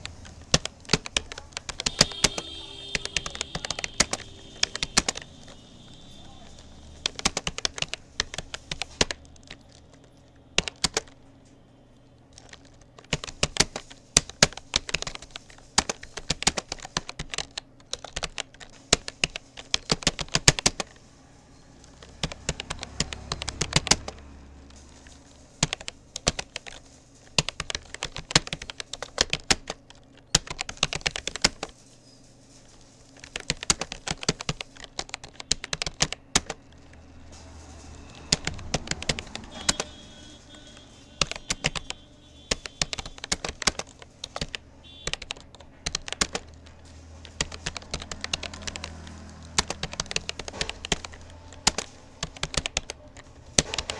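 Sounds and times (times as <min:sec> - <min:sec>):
keyboard typing clicks: 0:00.0 - 0:31.8, 0:32.5 - 0:53.9.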